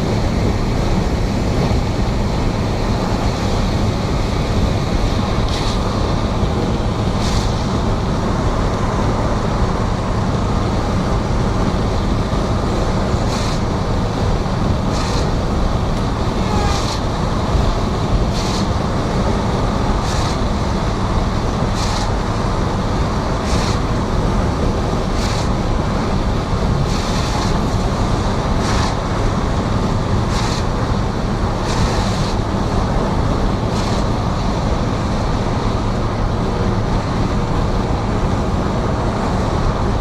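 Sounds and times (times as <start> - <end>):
heavy rain: 0.0 - 40.0
short hisses: 7.2 - 7.7.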